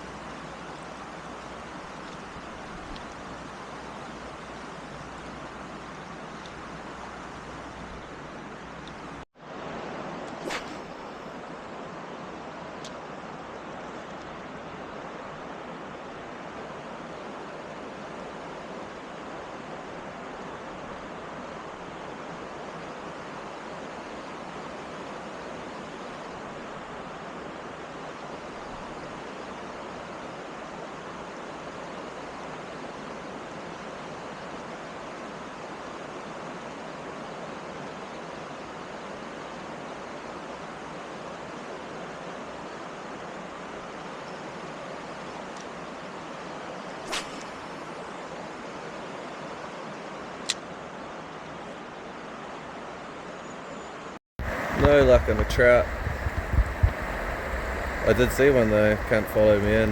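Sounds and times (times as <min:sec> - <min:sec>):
stream water flowing: 0:00.0 - 0:59.9
sharp click: 0:10.3 - 0:11.2, 0:47.1 - 0:47.8.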